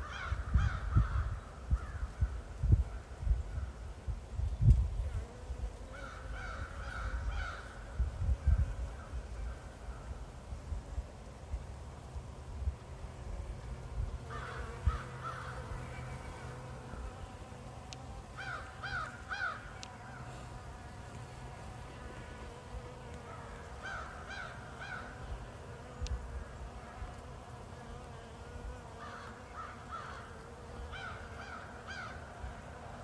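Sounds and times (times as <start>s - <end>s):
bees buzzing: 14.2s - 33.0s.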